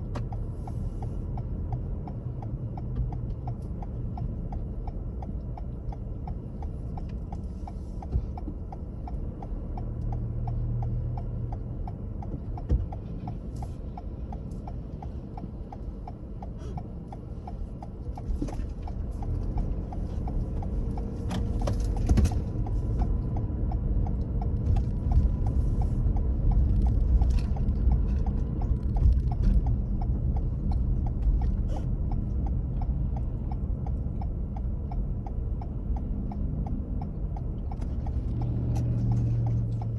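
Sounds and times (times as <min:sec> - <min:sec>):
car rumbling on road: 0:00.0 - 0:39.9
rapid light ticking: 0:00.0 - 0:39.9.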